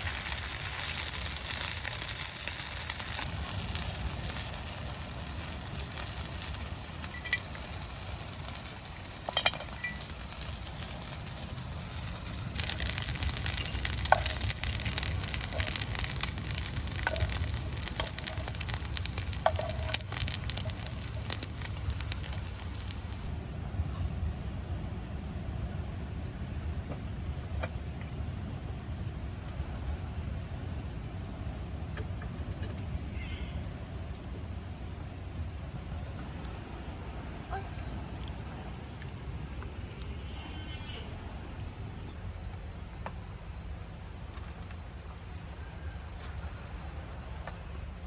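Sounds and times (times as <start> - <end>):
food sizzling and crackling: 0.0 - 23.3.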